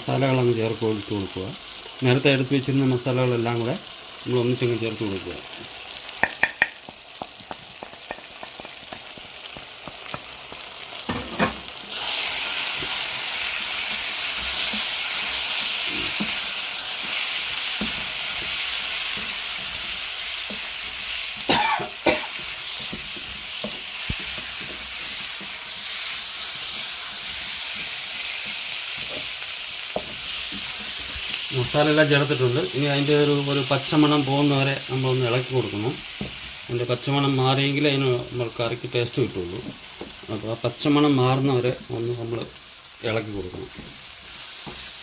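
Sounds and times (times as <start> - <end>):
vegetables sizzling in a pan: 0.0 - 45.0
spoon knocking against pan: 6.2 - 11.6.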